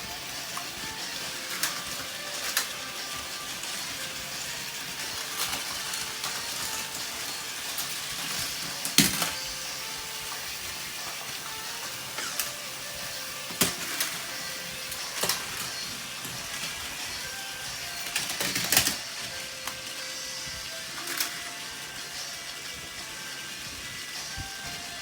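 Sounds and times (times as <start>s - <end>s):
toy trains whirring and rattling: 0.0s - 25.0s.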